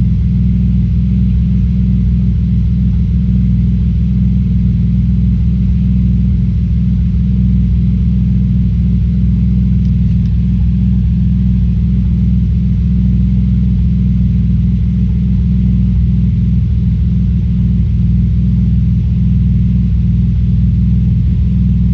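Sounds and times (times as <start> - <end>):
car engine idling with misfire: 0.0 - 21.9.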